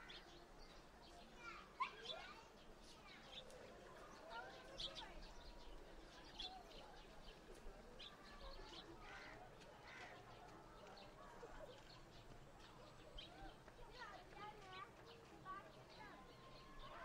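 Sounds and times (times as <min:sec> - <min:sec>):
faint distant voices: 0:00.0 - 0:17.0.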